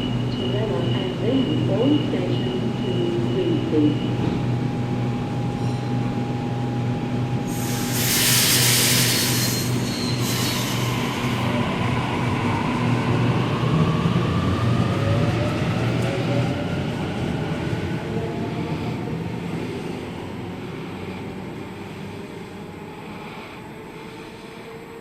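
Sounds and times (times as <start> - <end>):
train low hum: 0.0 - 25.0
hiss of air: 7.5 - 9.7.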